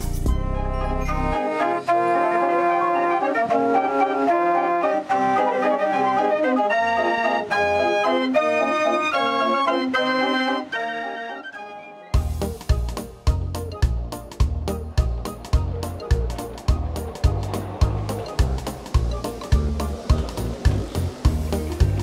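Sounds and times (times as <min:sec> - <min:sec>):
music with heavy beat and bass: 0:00.0 - 0:00.6, 0:12.2 - 0:22.0
organ playing held chords: 0:00.4 - 0:22.0.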